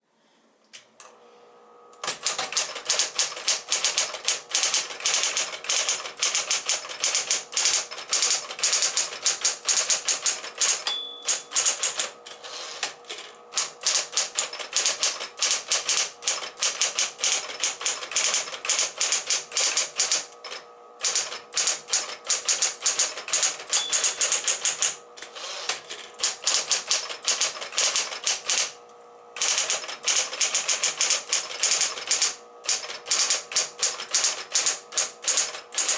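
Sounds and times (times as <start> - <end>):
typewriter motor hum: 1.9 - 35.9
typewriter keys striking: 2.0 - 28.8, 29.4 - 35.9
typewriter bell ringing: 2.2 - 12.1, 13.6 - 24.9, 29.4 - 35.9.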